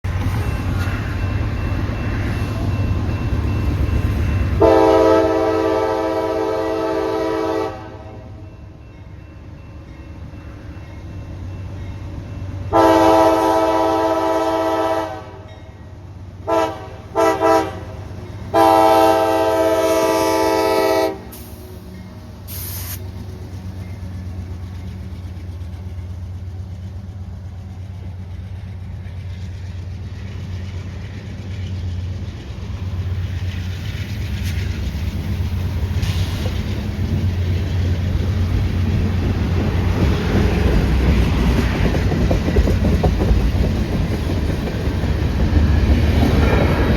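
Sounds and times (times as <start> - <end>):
diesel locomotives rumbling: 0.0 - 46.9
locomotive air horn: 4.6 - 8.4, 12.7 - 15.5, 16.4 - 21.8.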